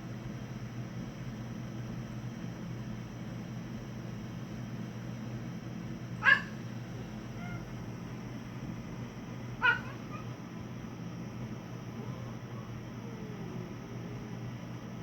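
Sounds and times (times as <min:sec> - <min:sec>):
cat yelping: 0:06.2 - 0:06.6, 0:07.3 - 0:07.7, 0:09.6 - 0:10.4.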